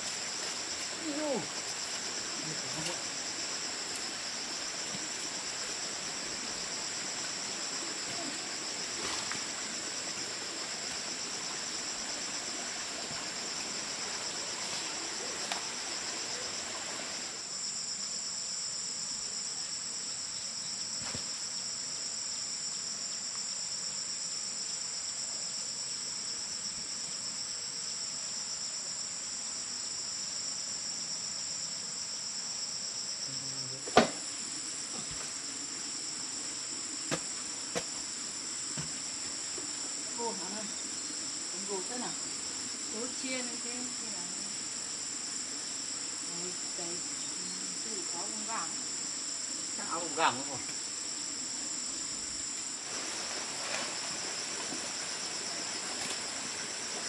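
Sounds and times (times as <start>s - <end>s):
insects chirring: 0.0s - 57.0s
light knocks: 33.8s - 34.2s.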